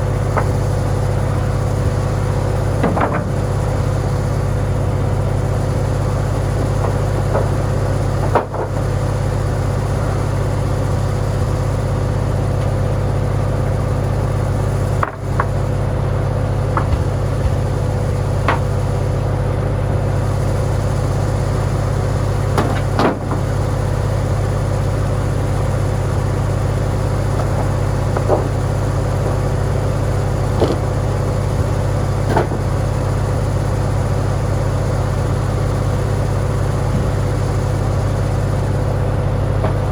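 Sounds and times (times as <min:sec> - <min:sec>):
tractor engine running: 0:00.0 - 0:39.9
sharp knocks: 0:16.7 - 0:19.0, 0:27.1 - 0:32.8.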